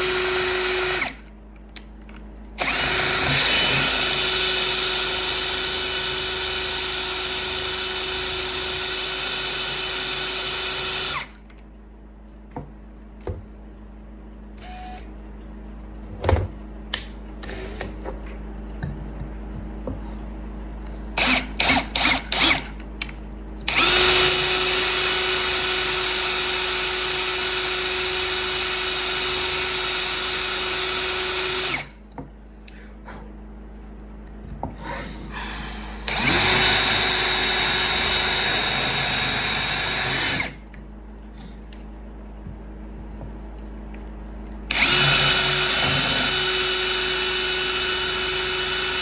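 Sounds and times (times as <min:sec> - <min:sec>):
electric power drill running: 0:00.0 - 0:01.3, 0:02.6 - 0:11.4, 0:21.2 - 0:22.8, 0:23.7 - 0:32.0, 0:36.1 - 0:40.6, 0:44.7 - 0:49.0.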